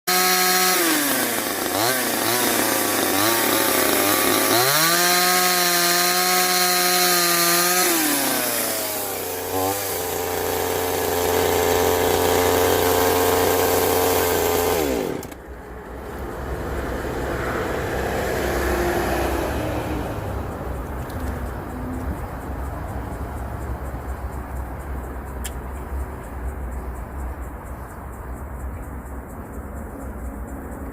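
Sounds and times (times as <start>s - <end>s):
chainsaw engine revving: 0.1s - 20.9s.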